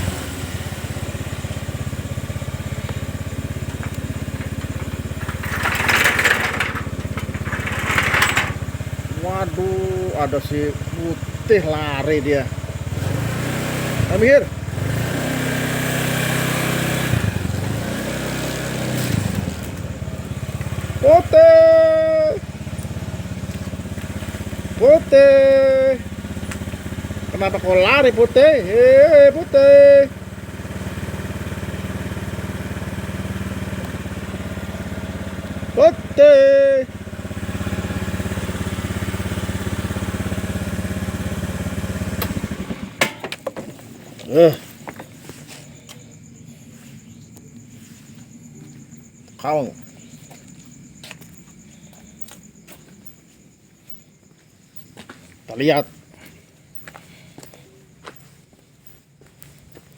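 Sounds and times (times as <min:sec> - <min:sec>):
small engine running: 0:00.0 - 0:43.2.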